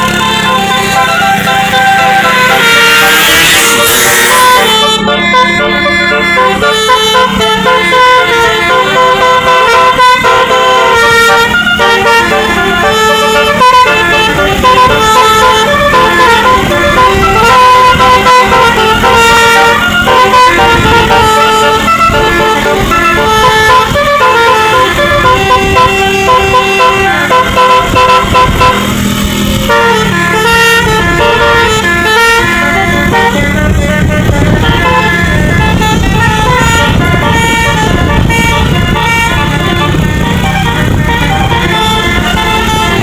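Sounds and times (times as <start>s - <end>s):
multi-tone bus horn playing tune: 0.0s - 43.0s.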